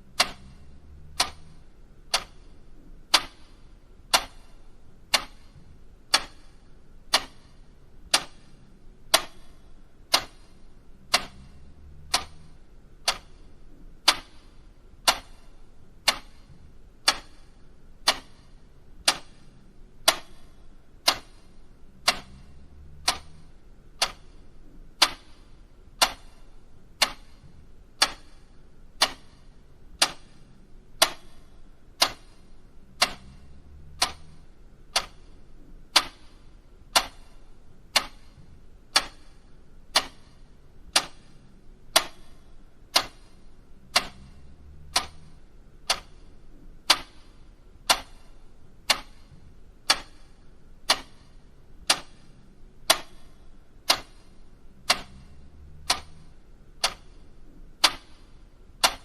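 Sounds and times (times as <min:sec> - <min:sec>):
mechanical clock ticking: 0:00.0 - 0:59.0.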